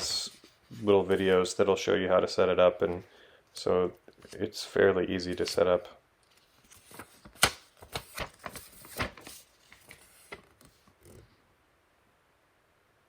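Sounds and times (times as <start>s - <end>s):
paper crinkling: 6.2s - 11.2s.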